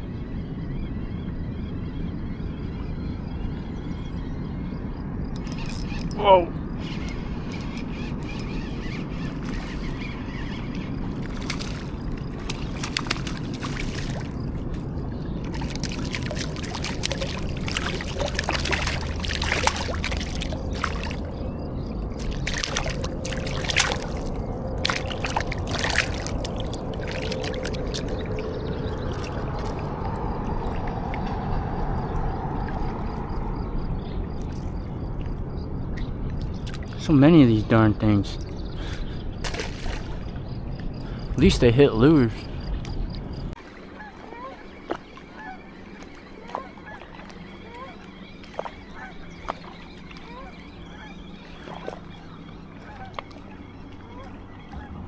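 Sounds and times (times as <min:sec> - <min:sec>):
water sloshing and splashing: 0:05.3 - 0:37.2, 0:39.4 - 0:55.0
steady water rush: 0:09.1 - 0:35.4, 0:43.5 - 0:55.0.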